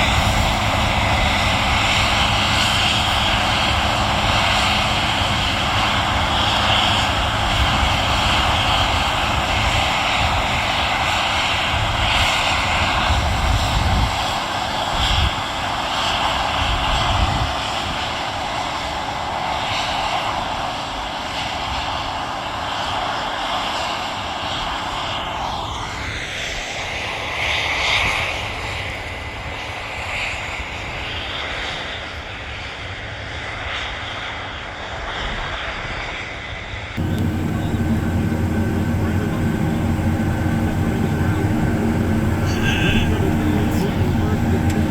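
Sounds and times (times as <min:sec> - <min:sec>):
heavy machinery rumbling: 0:37.0 - 0:44.9.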